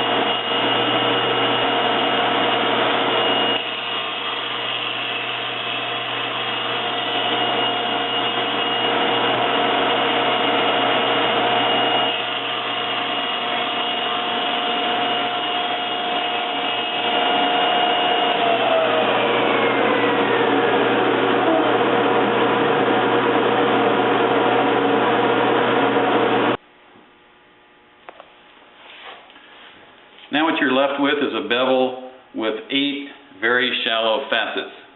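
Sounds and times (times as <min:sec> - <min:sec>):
table saw cutting and spinning down: 0:00.0 - 0:26.6.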